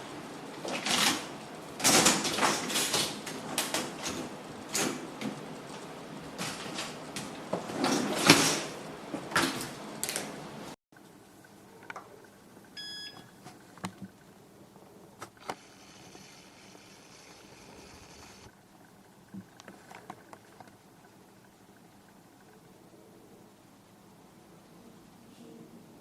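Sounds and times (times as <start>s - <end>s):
short electronic beep: 12.8s - 13.3s.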